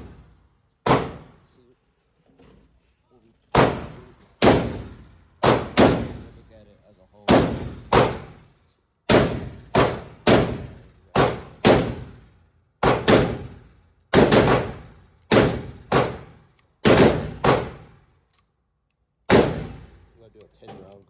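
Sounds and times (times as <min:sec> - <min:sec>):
pistol shots echoing: 0:00.0 - 0:01.4, 0:03.5 - 0:06.4, 0:07.3 - 0:08.4, 0:09.1 - 0:12.2, 0:12.8 - 0:18.0, 0:19.3 - 0:20.0.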